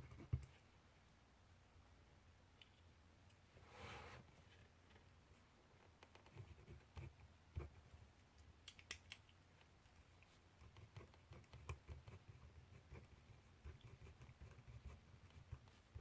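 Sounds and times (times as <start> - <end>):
pen writing on paper: 10.6 - 16.0.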